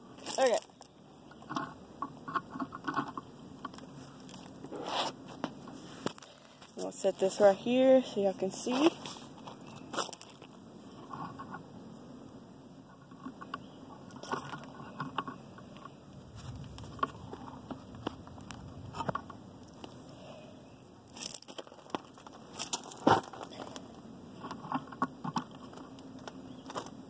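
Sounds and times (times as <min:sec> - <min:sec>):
tools clicking knocking and scraping: 0:01.3 - 0:03.8.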